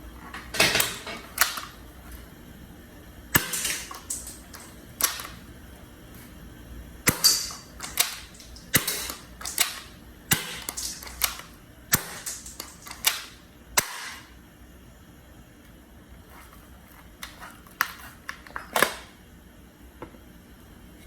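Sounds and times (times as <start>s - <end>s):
toy gun plastic action snaps: 7.1s - 14.2s.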